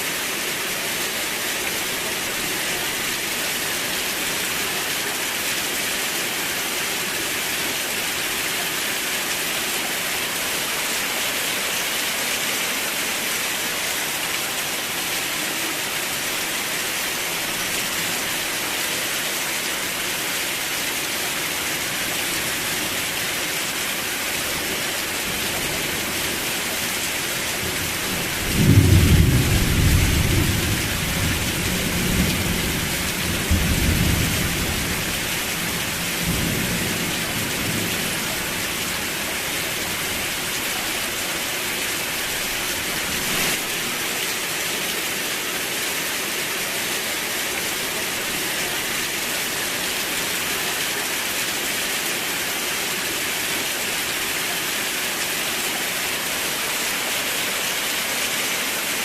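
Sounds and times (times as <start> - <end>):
steady rain: 0.0 - 59.0
low rumble of thunder: 28.3 - 35.0.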